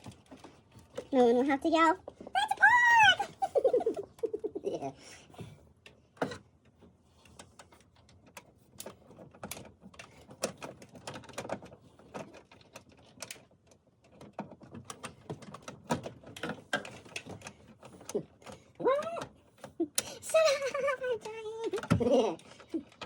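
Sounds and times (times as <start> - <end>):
plastic parts clicking and tapping: 0.0 - 2.7, 5.4 - 23.0.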